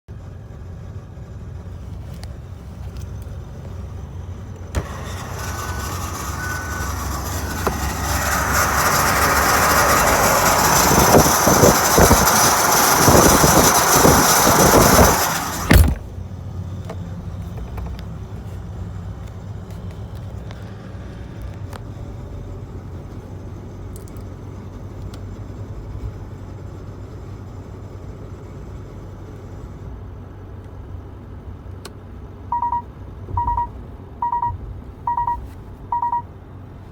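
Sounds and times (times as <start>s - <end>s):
vehicle engine running: 0.1s - 36.9s
loud rising noise: 4.7s - 16.1s
thump: 14.7s - 16.1s.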